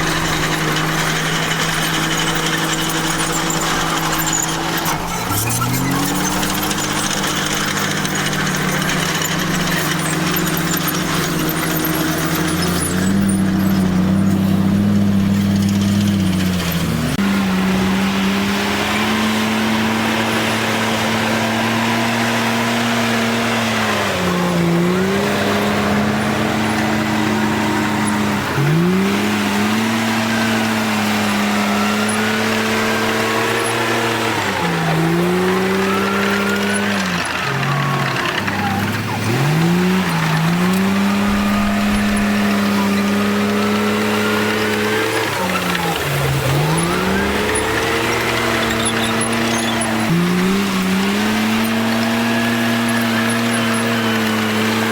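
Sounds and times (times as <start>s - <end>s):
faint high squeals: 0.0s - 17.2s, 30.1s - 54.9s
bulldozer diesel engine running hard: 0.0s - 54.9s.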